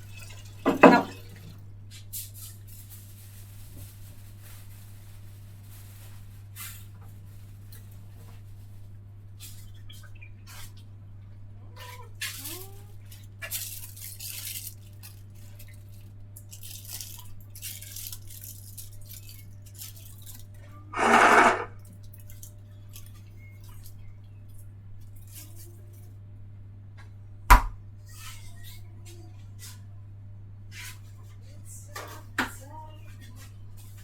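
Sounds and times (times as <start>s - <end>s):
dishes and cutlery clinking: 0.3s - 1.4s.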